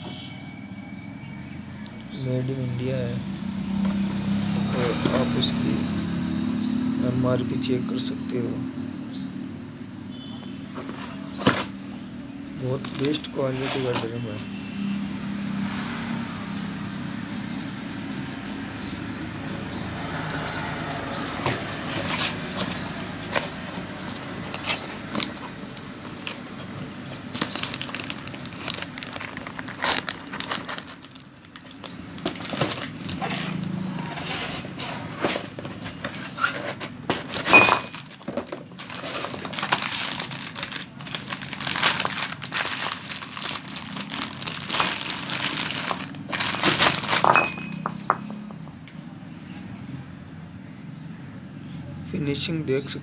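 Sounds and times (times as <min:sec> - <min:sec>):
packaging crinkling and rustling: 0:03.8 - 0:05.7, 0:10.8 - 0:11.9, 0:12.5 - 0:14.5, 0:21.2 - 0:48.6.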